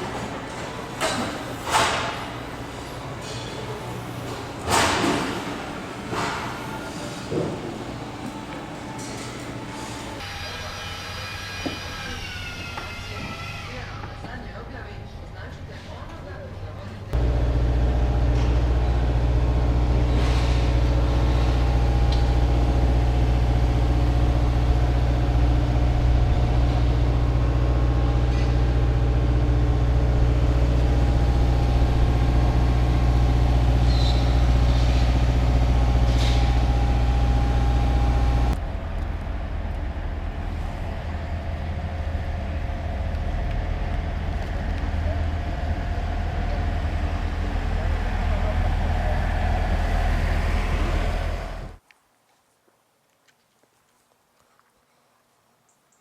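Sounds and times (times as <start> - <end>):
vehicle engine humming: 13.7 - 51.8.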